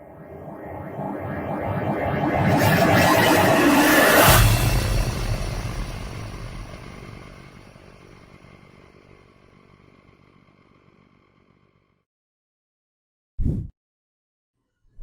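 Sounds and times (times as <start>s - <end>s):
noisy rumbling sound effect: 0.0s - 10.2s.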